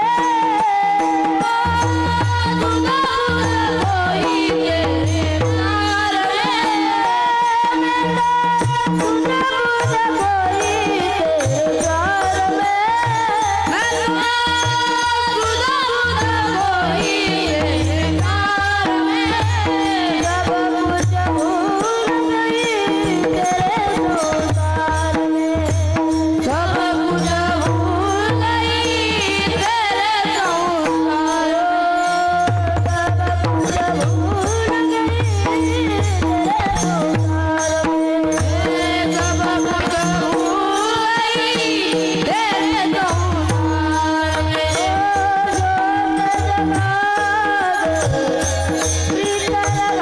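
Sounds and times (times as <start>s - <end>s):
person singing devotional melody: 0.0s - 50.0s.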